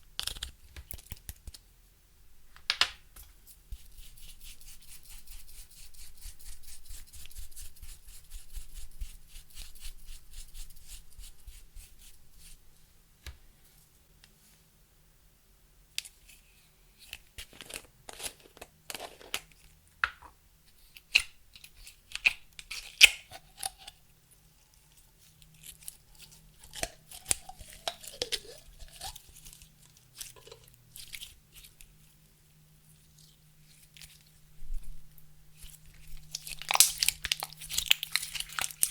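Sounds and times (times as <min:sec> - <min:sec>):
slime crackling: 0:36.2 - 0:38.9.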